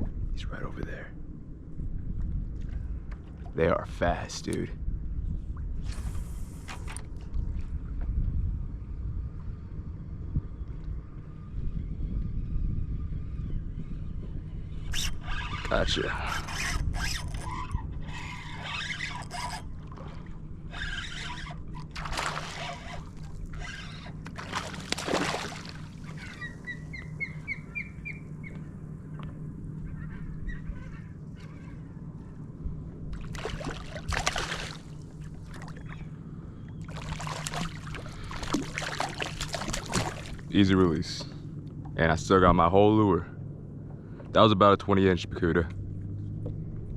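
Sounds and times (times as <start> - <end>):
steady low hum: 0.0 - 46.9
water splashing: 21.8 - 26.4, 33.2 - 36.0, 36.8 - 40.6.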